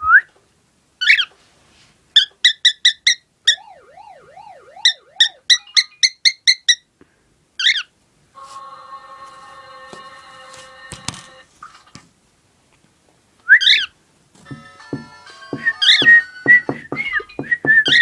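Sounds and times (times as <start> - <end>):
cockatiel whistling: 15.6 - 18.0.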